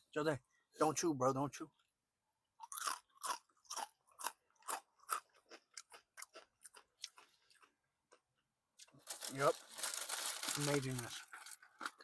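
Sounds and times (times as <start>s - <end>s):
person crunching crispy food: 2.6s - 7.7s, 8.8s - 12.0s.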